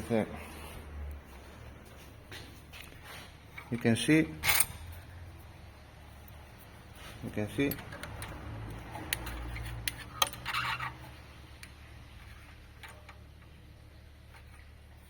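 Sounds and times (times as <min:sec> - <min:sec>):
low steady hum: 0:00.0 - 0:15.0
metal parts clicking and tapping: 0:07.5 - 0:13.6.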